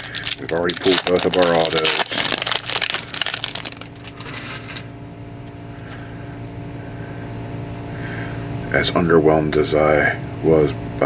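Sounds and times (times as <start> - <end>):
foil wrapper crinkling: 0.0 - 5.0
steady low hum: 0.0 - 11.0.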